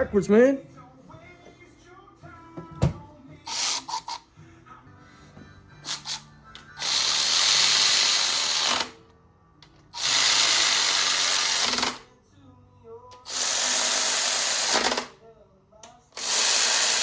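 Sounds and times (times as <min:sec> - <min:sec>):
power tool running: 0:03.5 - 0:04.2, 0:05.9 - 0:06.2, 0:06.8 - 0:09.0, 0:10.0 - 0:12.0, 0:13.2 - 0:15.1, 0:16.2 - 0:17.0.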